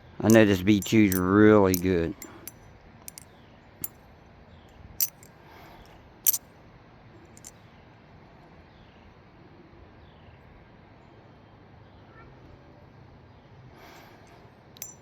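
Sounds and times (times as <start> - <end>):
butterfly knife handles clicking: 0.2 - 3.2, 5.0 - 5.3, 14.8 - 15.0.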